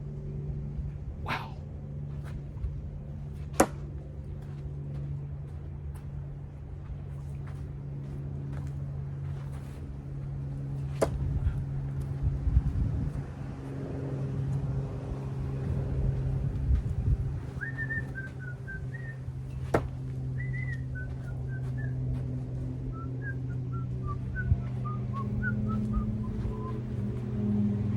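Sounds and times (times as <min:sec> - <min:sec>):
low hum: 0:00.0 - 0:27.9
person whistling a tune: 0:20.4 - 0:21.9, 0:23.0 - 0:26.8.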